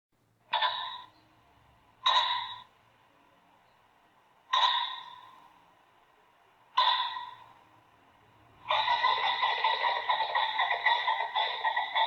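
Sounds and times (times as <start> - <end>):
pheasant harsh call: 2.0 - 2.7, 4.5 - 5.4, 6.8 - 7.4.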